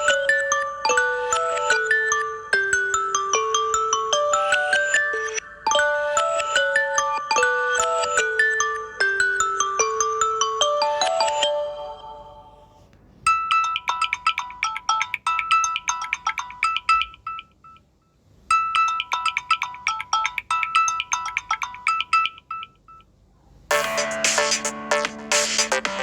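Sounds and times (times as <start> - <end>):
phone ringtone chiming melody: 0.0 - 12.7, 13.3 - 17.8, 18.5 - 23.0, 23.7 - 26.0
ringtone with electronic beat: 0.0 - 12.7, 13.3 - 23.1, 23.7 - 26.0.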